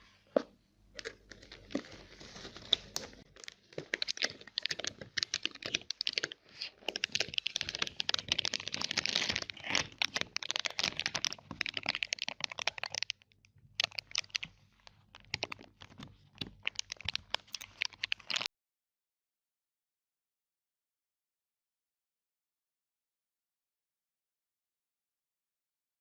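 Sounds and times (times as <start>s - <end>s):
chocolate crunching while eaten: 1.0s - 18.5s.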